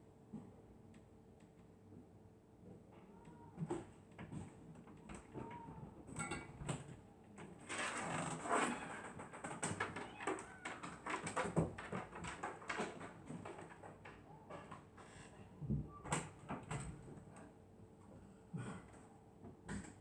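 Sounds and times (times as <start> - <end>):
small clicks and rustles: 3.2 - 15.4.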